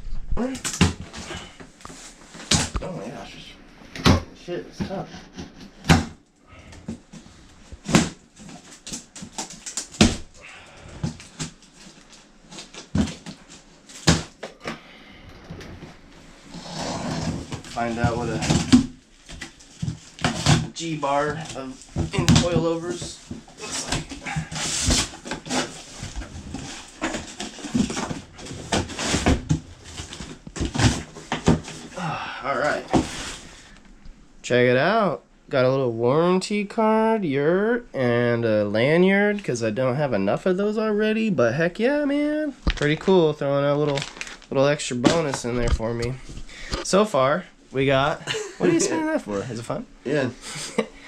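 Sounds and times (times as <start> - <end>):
packaging rustling and crinkling: 11.0 - 14.4, 17.1 - 32.0, 42.6 - 43.2, 43.8 - 46.7
cardboard packaging being torn open: 43.9 - 44.5.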